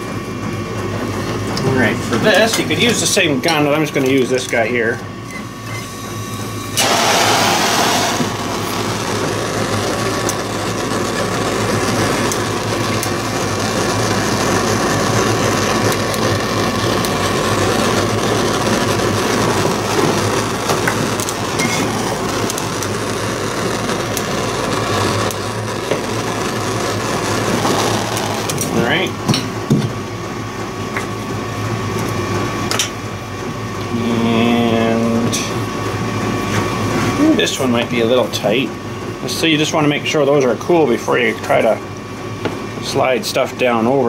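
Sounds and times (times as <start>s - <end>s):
heat gun blowing: 6.6s - 28.9s.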